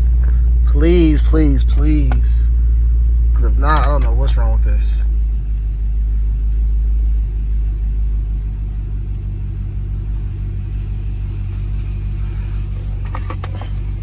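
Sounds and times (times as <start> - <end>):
car engine idling: 0.0 - 14.0.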